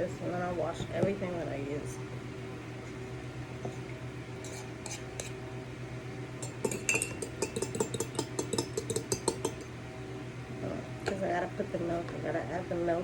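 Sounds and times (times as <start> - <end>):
utensil beating eggs in bowl: 2.7 - 5.5, 6.4 - 9.8.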